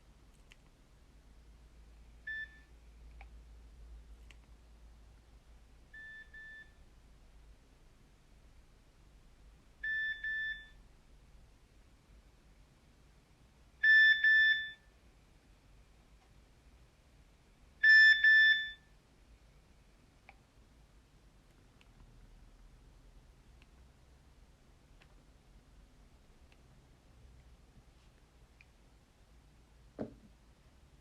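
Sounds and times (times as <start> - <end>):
mobile phone double beep: 13.8 - 14.8.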